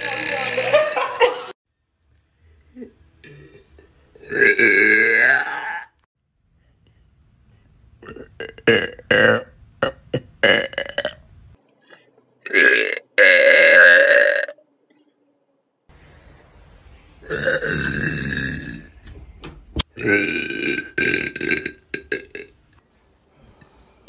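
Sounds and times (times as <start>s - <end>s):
person burping: 0.0s - 1.3s, 3.2s - 6.0s, 8.0s - 11.2s, 12.4s - 14.6s, 17.2s - 18.9s, 20.0s - 22.5s.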